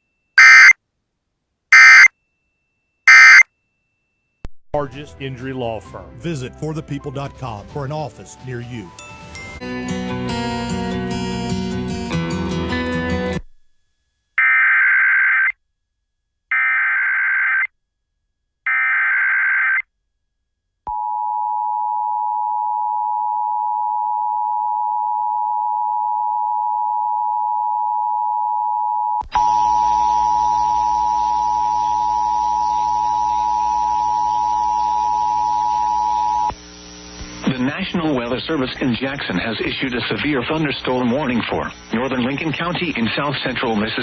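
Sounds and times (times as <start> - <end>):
data tone bursts: 0.4 - 0.8, 1.8 - 2.1, 3.1 - 3.4
two-tone attention signal: 0.4 - 0.8, 1.8 - 2.1, 3.1 - 3.4.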